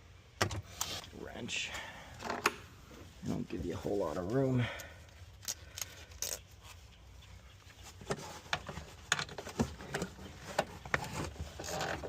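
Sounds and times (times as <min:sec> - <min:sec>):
wrench clicking and scraping metal: 0:05.4 - 0:06.5.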